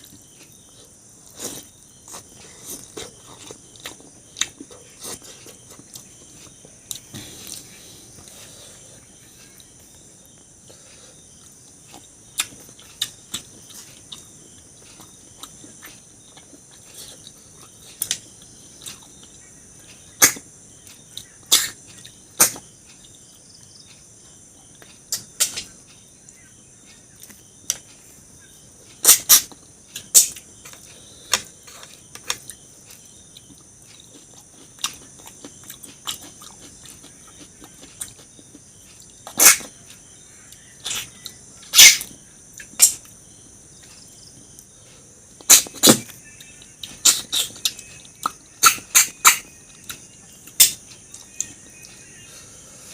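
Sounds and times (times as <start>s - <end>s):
mouth clicks and smacks eating: 29.0s - 40.0s, 45.4s - 51.6s.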